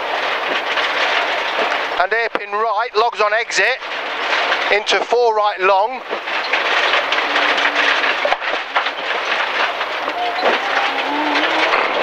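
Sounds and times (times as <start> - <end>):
tyres hissing on gravel: 0.0 - 12.0
rally car engine accelerating: 9.8 - 12.0.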